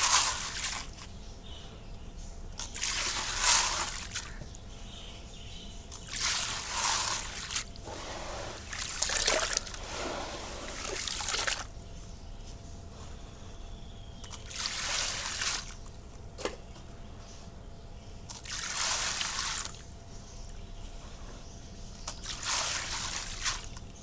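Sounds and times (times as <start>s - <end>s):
wet concrete splashing into water: 2.6s - 4.4s, 5.9s - 11.7s, 14.3s - 15.9s, 18.3s - 19.8s, 22.1s - 23.8s.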